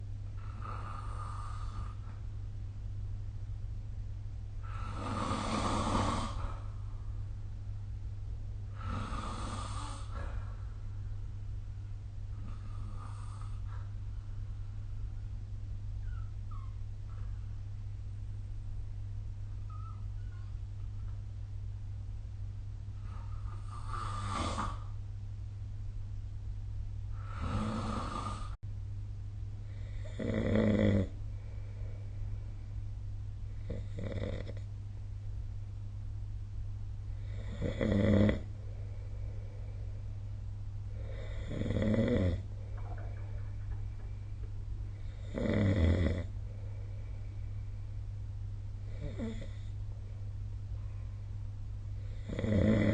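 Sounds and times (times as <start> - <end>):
steady low hum: 0.0 - 52.9
person snoring: 4.6 - 6.6, 8.7 - 10.3, 27.2 - 28.6, 37.2 - 38.5, 41.0 - 43.0, 45.1 - 46.3, 48.9 - 49.7, 52.1 - 52.9.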